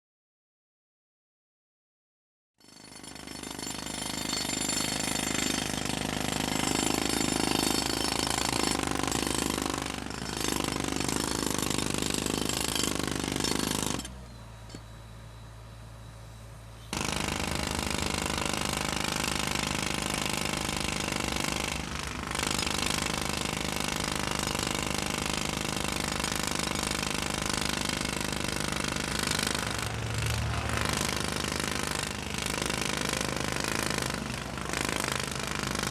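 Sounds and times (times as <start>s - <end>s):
jackhammer hammering: 2.6s - 14.9s, 16.9s - 35.9s.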